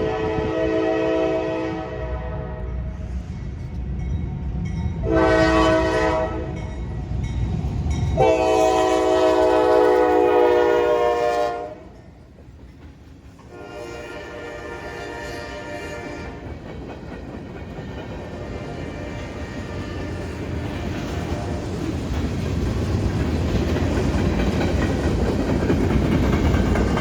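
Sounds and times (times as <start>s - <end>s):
locomotive air horn blasts: 0.0s - 2.8s, 5.0s - 6.6s, 8.2s - 11.9s, 13.5s - 16.4s.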